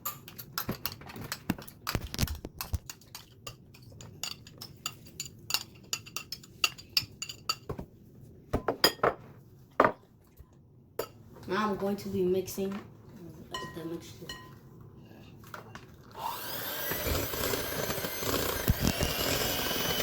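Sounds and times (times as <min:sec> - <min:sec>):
utensil clinking against a bowl: 0:02.6 - 0:07.8.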